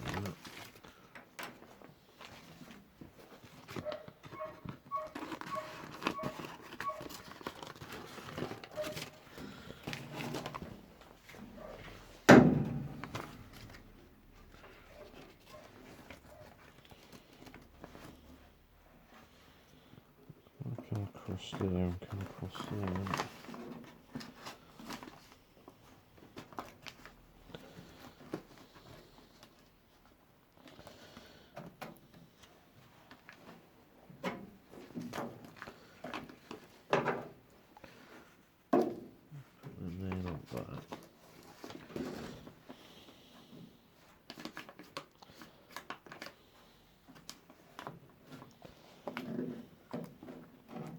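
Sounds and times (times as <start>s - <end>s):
faint handling sounds: 0.0s - 50.9s
paper rustling and scraping: 1.6s - 19.9s, 21.3s - 29.7s, 39.4s - 50.9s
heavy thunk: 12.3s - 13.1s.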